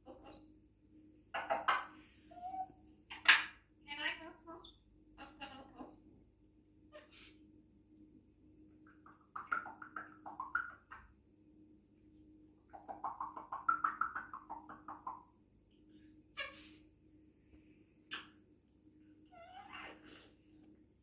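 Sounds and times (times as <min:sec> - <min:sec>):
parrot chattering: 0:01.3 - 0:04.7.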